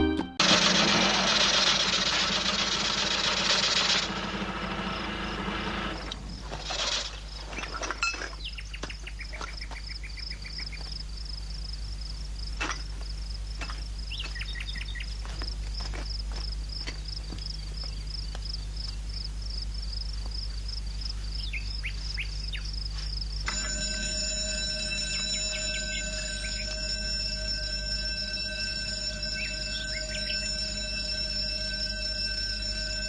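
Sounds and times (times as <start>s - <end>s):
steady low hum: 9.9s - 33.0s
high chirp repeating: 24.8s - 33.0s.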